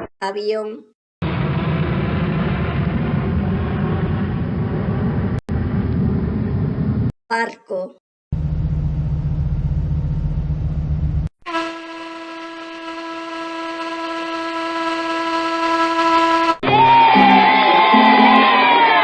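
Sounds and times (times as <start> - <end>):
ship's horn blast: 11.4 - 16.7.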